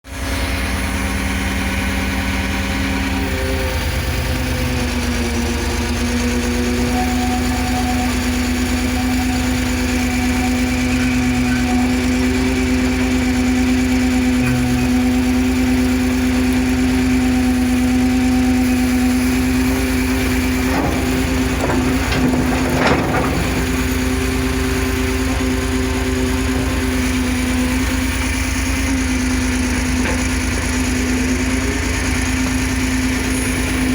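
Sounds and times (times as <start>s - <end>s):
excavator diesel engine running: 0.1s - 33.9s
clatter of knocks: 20.5s - 24.2s.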